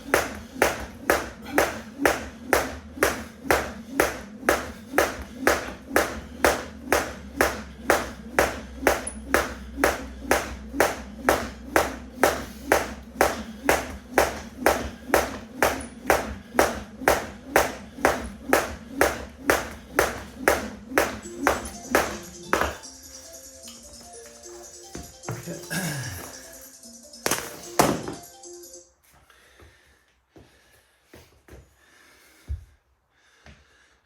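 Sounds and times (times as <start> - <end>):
jump rope slapping the floor: 0.0 - 22.8.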